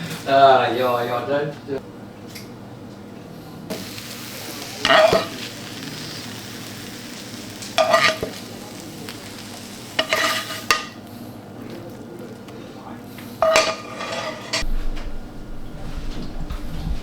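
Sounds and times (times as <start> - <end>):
eggs sizzling in a frying pan: 3.7 - 11.1
utensil scraping a pan: 4.6 - 11.0, 13.4 - 14.7.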